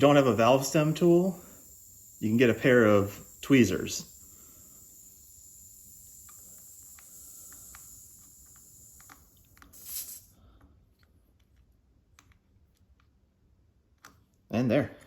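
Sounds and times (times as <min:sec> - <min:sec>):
air hissing from valve stem: 0:00.0 - 0:10.9
tweezers clicking on valve: 0:00.1 - 0:10.3.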